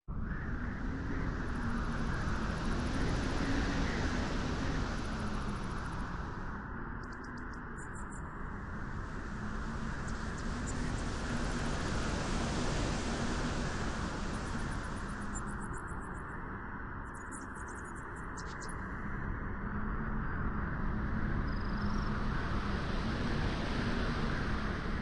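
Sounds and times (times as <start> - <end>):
wind rushing on beach: 0.2 - 6.8, 8.4 - 16.0, 19.8 - 25.0.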